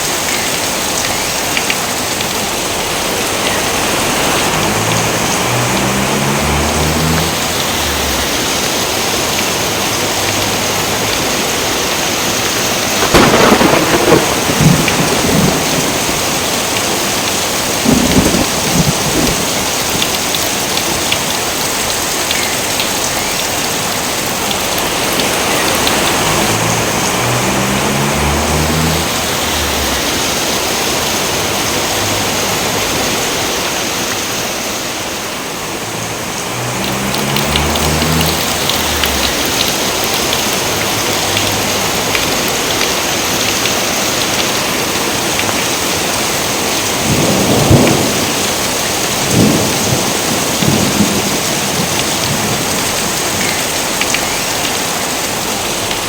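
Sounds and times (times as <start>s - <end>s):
heavy rain: 0.0s - 56.0s
thunderclap rumbling: 12.3s - 20.4s, 24.6s - 33.5s, 36.0s - 42.7s, 46.8s - 53.4s.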